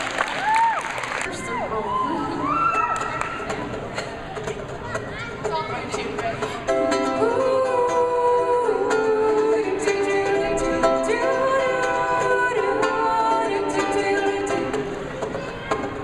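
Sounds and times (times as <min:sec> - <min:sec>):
ukulele: 0:02.1 - 0:16.0
wordless singing: 0:07.1 - 0:15.0.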